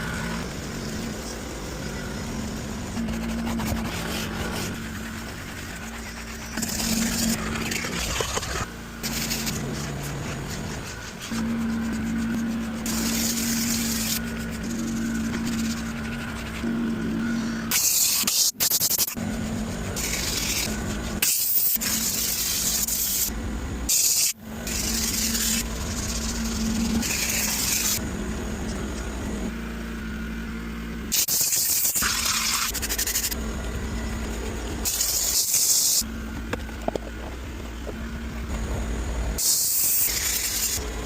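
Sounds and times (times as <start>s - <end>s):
steady machine hum: 0.0s - 41.0s
hissing sprays: 9.0s - 16.6s, 34.8s - 36.1s, 39.4s - 40.8s.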